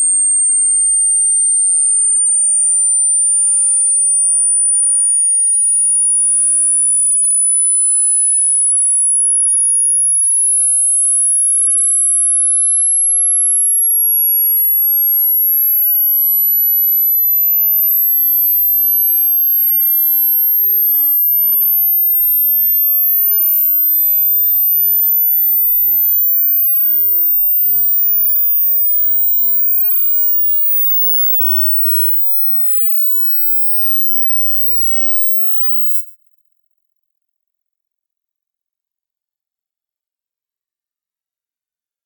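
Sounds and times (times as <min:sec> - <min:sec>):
high-pitched pure test tone: 0:00.0 - 0:04.2, 0:16.2 - 0:36.2.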